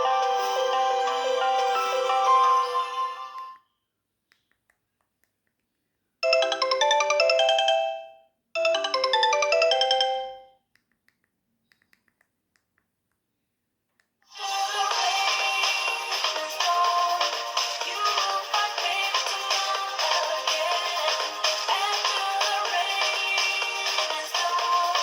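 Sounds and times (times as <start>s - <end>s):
mobile phone ringtone melody: 0.0s - 3.6s, 6.2s - 10.6s.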